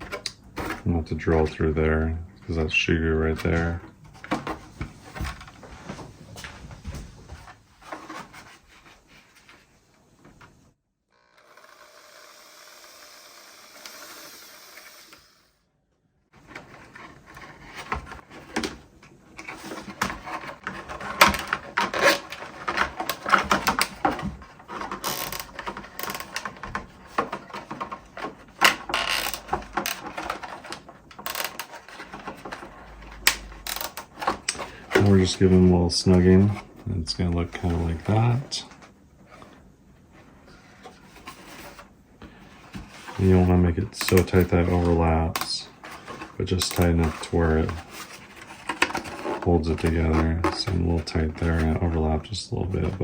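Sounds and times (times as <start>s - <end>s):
small drill running: 11.1s - 15.6s
plastic rustling: 16.4s - 53.0s.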